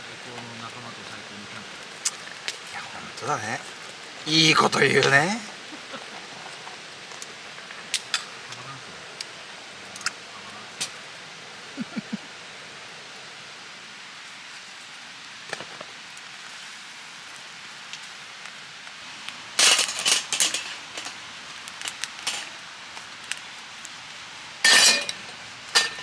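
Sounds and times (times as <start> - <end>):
cookware clinking and clattering: 19.6 - 21.2, 22.2 - 22.5, 24.7 - 26.0.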